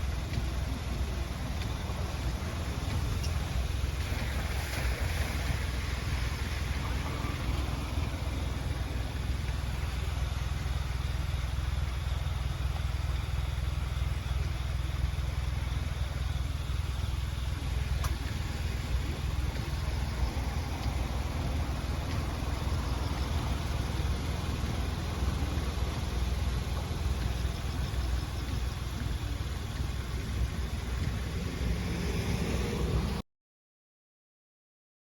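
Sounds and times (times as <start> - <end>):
flooded river rushing: 0.0 - 33.2.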